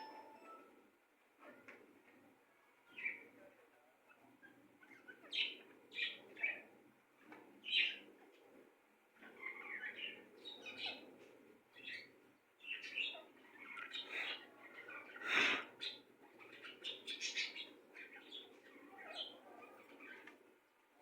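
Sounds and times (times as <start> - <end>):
birds chirping: 11.8 - 19.4.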